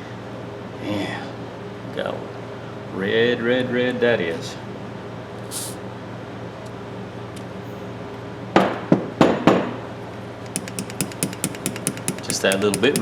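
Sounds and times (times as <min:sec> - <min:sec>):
metal pliers knocks: 0:10.4 - 0:13.0
pliers clicking: 0:10.4 - 0:13.0.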